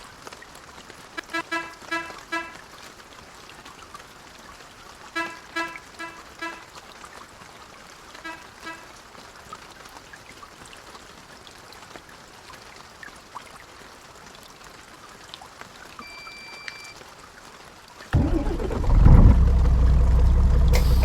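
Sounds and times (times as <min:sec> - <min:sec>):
rain on a bus: 0:00.0 - 0:21.0
short electronic beep: 0:16.0 - 0:17.0
low engine rumble: 0:18.2 - 0:21.0.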